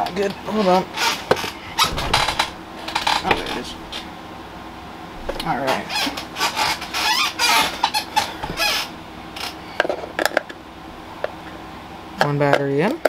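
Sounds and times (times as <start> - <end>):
plastic scraping and rustling: 1.4 - 4.1.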